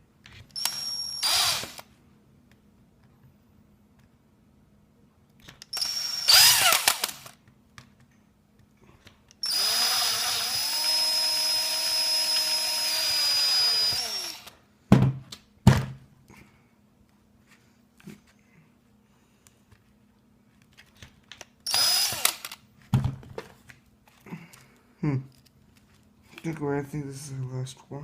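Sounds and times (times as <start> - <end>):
power drill drilling into plastic: 0.6 - 1.9, 5.7 - 7.4, 9.4 - 14.6, 21.7 - 22.6.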